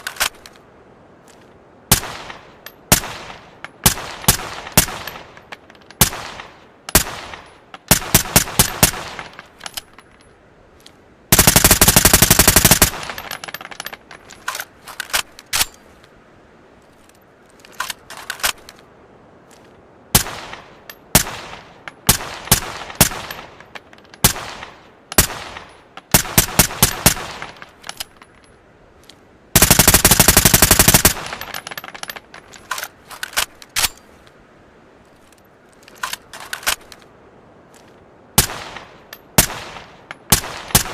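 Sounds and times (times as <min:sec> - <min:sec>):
fully automatic rifle bursts: 0:11.3 - 0:13.1, 0:29.6 - 0:31.4.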